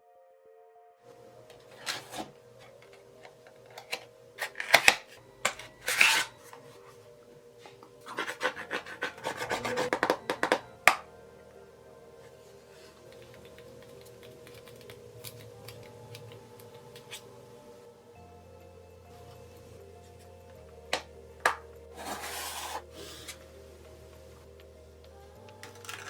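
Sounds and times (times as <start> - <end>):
quiet background music: 0.0 - 26.0
packaging clicks: 1.5 - 6.4, 13.1 - 17.2, 25.5 - 26.0.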